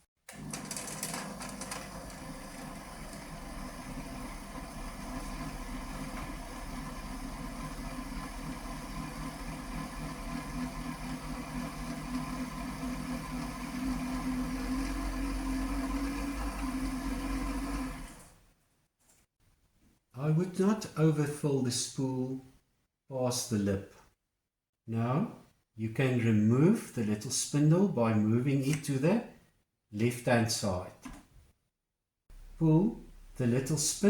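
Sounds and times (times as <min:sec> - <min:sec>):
sewing machine motor humming: 0:00.3 - 0:18.4.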